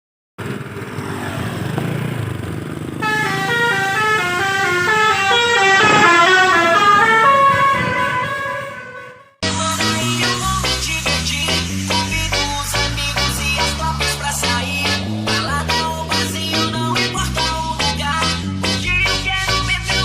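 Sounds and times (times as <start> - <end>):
bus engine rumble: 1.6 - 9.2, 9.9 - 18.2
musical bus horn: 3.0 - 10.8.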